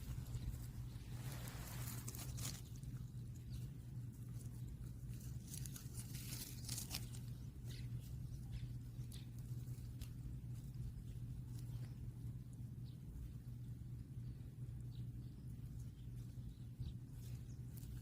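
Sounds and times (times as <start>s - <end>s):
steady low hum: 0.0s - 18.0s
puppy chewing crunchily: 1.8s - 12.6s.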